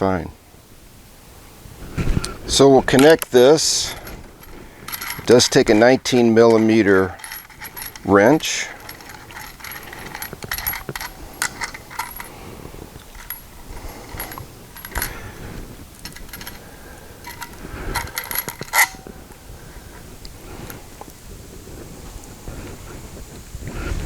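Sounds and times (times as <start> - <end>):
metal parts and wrench clinking: 2.5 - 19.3.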